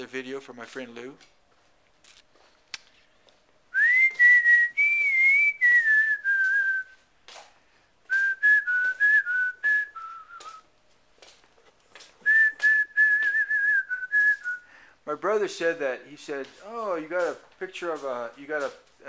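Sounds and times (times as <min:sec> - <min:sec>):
person whistling a slow tune: 0:03.7 - 0:07.0, 0:08.0 - 0:10.7, 0:12.2 - 0:14.8.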